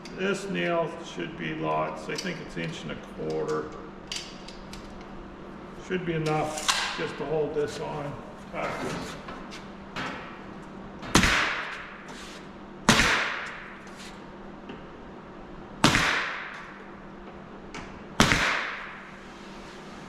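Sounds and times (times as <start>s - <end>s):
brad nailer shots: 11.1s - 12.0s, 12.9s - 13.8s, 15.8s - 16.7s, 18.2s - 19.1s.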